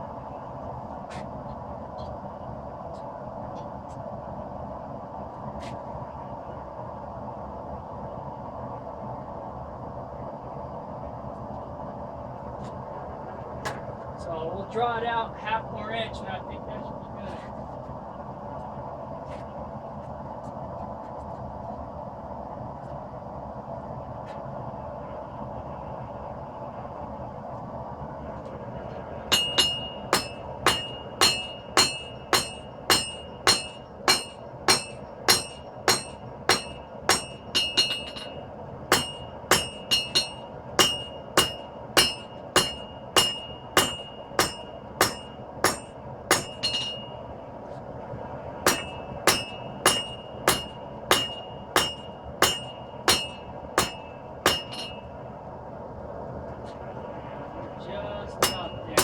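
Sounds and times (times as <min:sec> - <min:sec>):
hammer ringing on anvil: 0:29.3 - 0:47.2, 0:48.7 - 0:55.1, 0:58.4 - 0:59.0.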